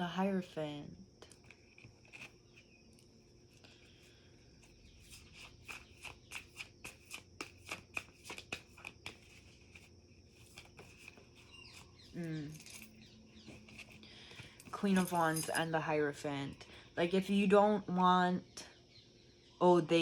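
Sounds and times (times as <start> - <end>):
cards being shuffled: 1.4 - 2.7, 5.0 - 11.9.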